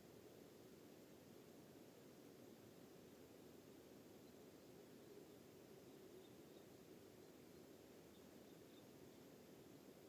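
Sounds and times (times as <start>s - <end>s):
faint background hiss: 0.0s - 10.0s.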